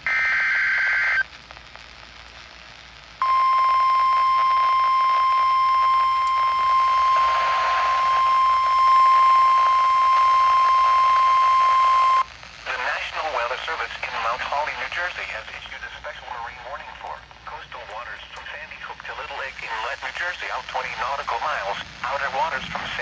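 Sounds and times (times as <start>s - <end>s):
radio hiss: 0.0s - 23.0s
steady warning alarm tone: 3.2s - 12.2s.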